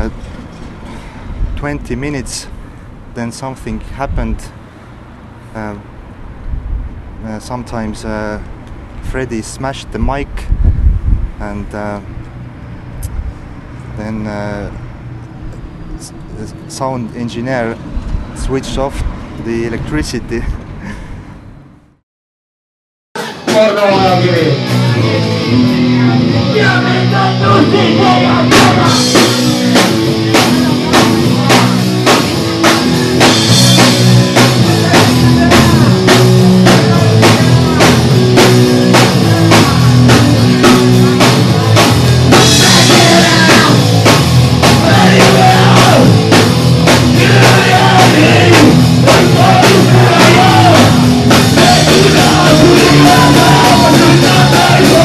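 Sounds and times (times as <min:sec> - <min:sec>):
driving drums: 0:00.0 - 0:00.2, 0:23.2 - 0:55.0
distorted guitars: 0:00.0 - 0:00.8, 0:23.2 - 0:55.0
shouted singing: 0:23.2 - 0:31.9, 0:34.0 - 0:55.0.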